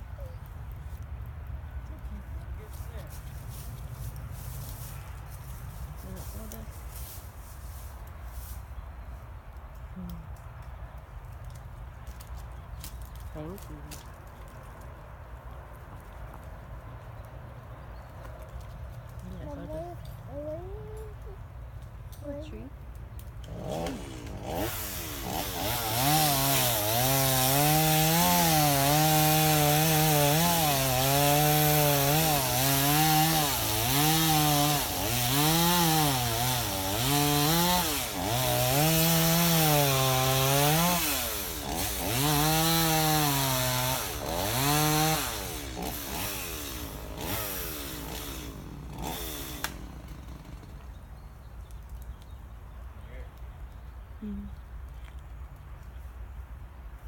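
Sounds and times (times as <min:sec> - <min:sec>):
chainsaw cutting wood: 0:23.2 - 0:51.1.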